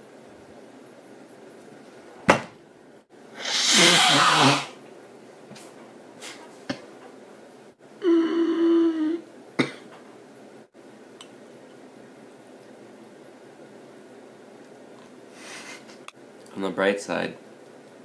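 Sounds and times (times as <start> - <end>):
loud breathy sneeze: 3.3 - 4.8
held vocal sound: 8.0 - 9.2.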